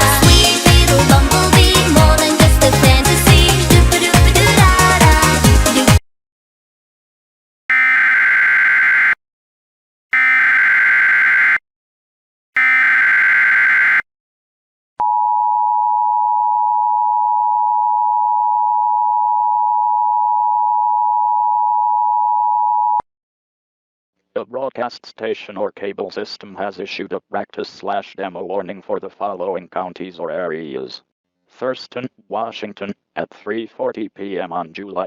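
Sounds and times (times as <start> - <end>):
harsh digital data screech: 12.6 - 14.0.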